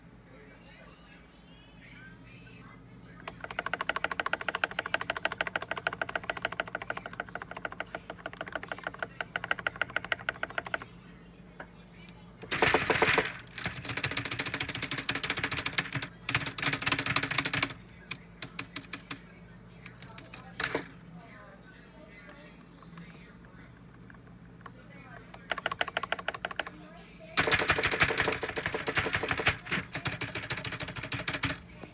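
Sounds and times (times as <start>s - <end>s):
fast typing on keyboards: 3.2s - 10.9s, 12.4s - 19.2s, 19.9s - 20.9s, 25.3s - 26.7s, 27.4s - 31.9s.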